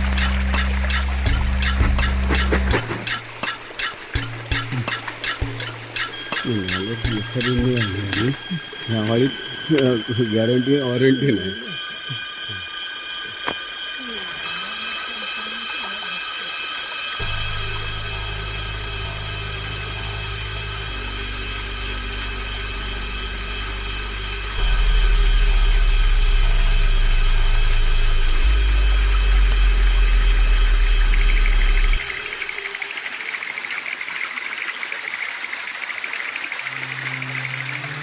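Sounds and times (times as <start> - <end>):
loud low drone: 0.0 - 13.3, 17.2 - 32.3
steady hiss: 0.0 - 30.7.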